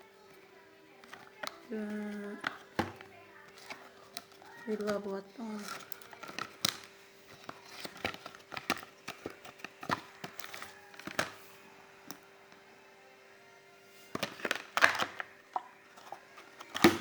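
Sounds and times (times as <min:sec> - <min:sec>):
cardboard and plastic taps and clicks: 0:01.0 - 0:01.6, 0:02.3 - 0:05.0, 0:05.6 - 0:11.4, 0:14.1 - 0:17.0.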